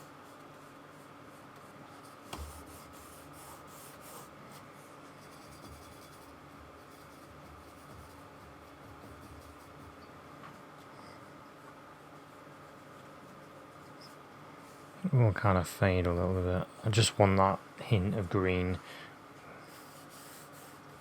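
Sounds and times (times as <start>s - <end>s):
paintbrush strokes scratching: 5.2s - 10.0s.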